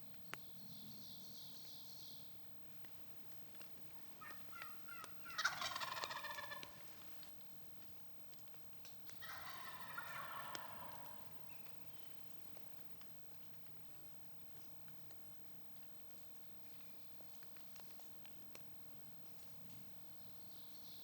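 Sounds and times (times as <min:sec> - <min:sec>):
turkey gobbling: 0:04.0 - 0:07.2, 0:09.2 - 0:11.7.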